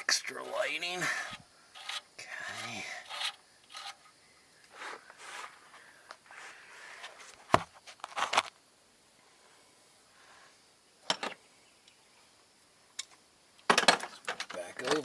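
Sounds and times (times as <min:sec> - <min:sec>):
rustling and shuffling: 0:04.7 - 0:08.6.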